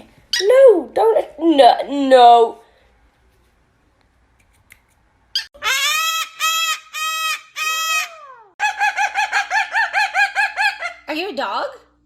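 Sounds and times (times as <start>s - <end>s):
bird calling loudly: 5.4s - 11.1s.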